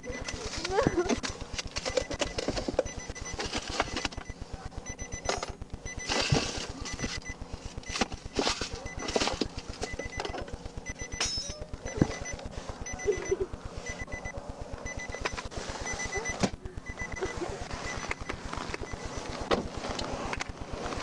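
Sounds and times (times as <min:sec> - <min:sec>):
electronic beeping: 0:00.0 - 0:19.4
rustling and knocking handling noise: 0:00.2 - 0:04.3.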